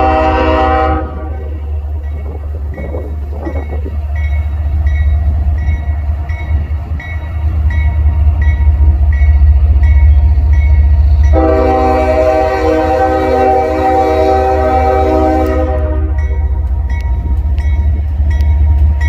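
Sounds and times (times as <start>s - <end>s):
locomotive air horn: 0.0s - 1.7s, 11.3s - 16.4s
railroad crossing bell: 0.0s - 19.0s
train rumbling past: 0.0s - 19.0s.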